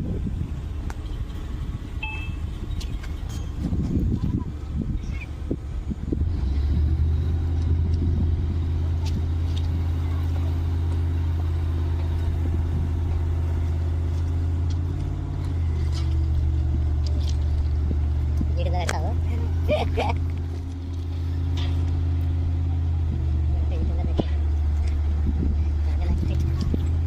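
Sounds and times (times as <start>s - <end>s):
large engine droning: 0.0s - 27.0s.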